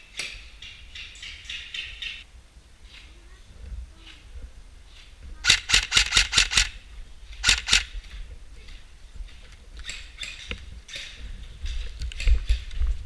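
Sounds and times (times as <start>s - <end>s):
airsoft gun shots: 5.4s - 6.8s, 7.4s - 7.9s.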